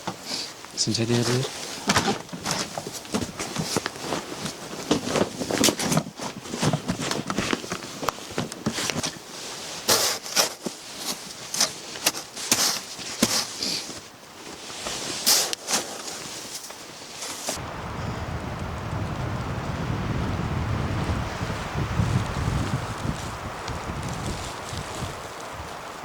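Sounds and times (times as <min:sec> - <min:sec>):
snow shoveling: 0:07.6 - 0:18.3, 0:20.8 - 0:26.0
snow crunching underfoot: 0:07.9 - 0:26.0.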